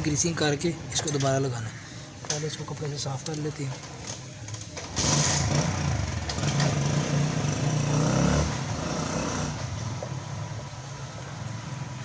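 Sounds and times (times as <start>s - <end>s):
vehicle engine rumbling: 3.7s - 12.0s.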